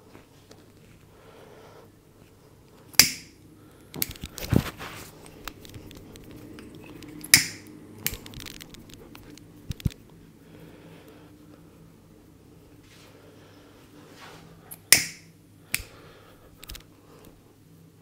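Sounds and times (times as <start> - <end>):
loud cracks: 3.0 - 3.4, 7.2 - 9.0.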